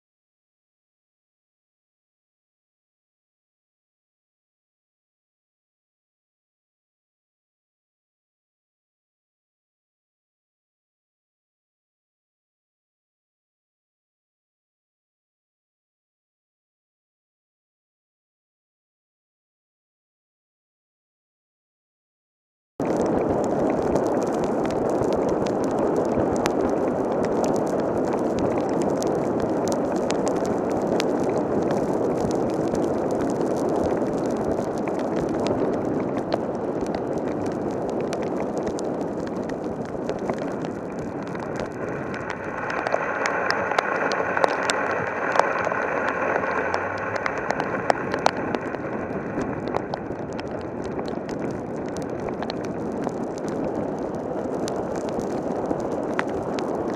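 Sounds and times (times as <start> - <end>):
heavy rain pouring: 22.8 - 56.9.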